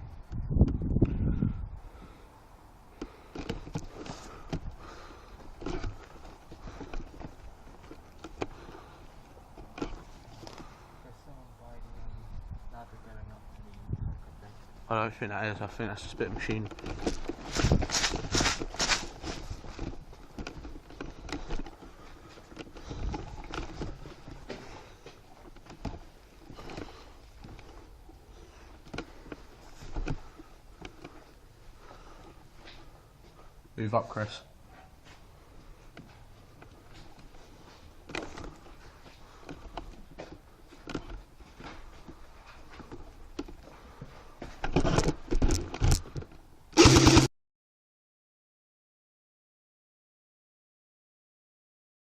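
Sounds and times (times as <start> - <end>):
rustling: 15.9 - 33.7, 34.6 - 47.3.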